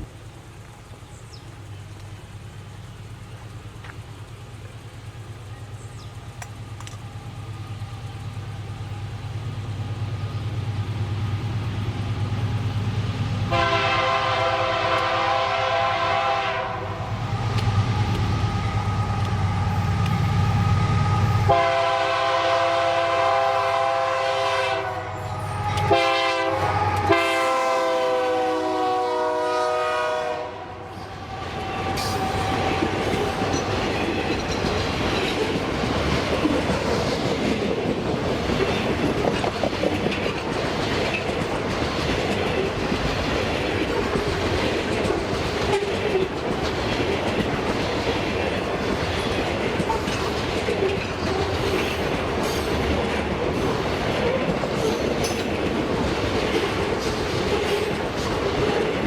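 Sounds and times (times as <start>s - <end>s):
locomotive engine rumble: 0.0s - 59.0s
train air horn blasts: 13.5s - 17.1s, 18.4s - 33.6s.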